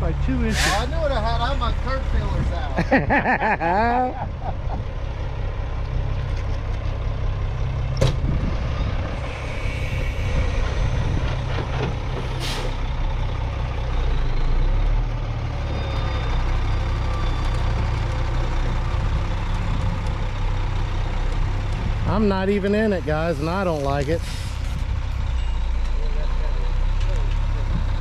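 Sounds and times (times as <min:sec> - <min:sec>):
diesel truck engine running: 0:00.0 - 0:28.0
air brake hiss: 0:00.5 - 0:00.9, 0:09.2 - 0:10.9, 0:12.2 - 0:12.8, 0:24.2 - 0:24.7.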